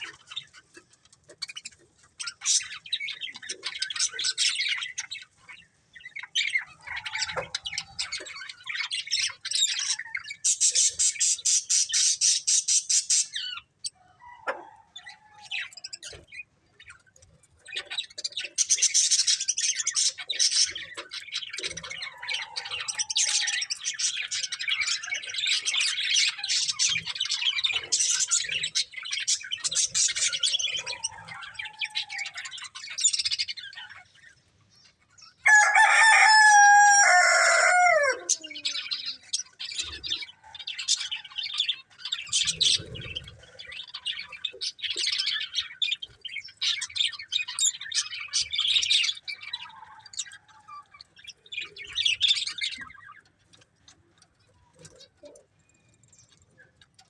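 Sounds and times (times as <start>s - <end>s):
budgerigars chattering and chirping: 0.0s - 57.0s
loud drawn-out bird call: 35.5s - 38.6s.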